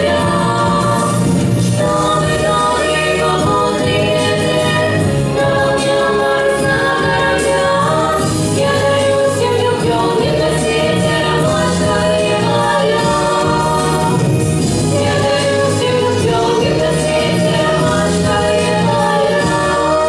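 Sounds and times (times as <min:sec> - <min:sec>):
musical backing track: 0:00.0 - 0:20.0
vocal ensemble singing in harmony: 0:00.0 - 0:20.0.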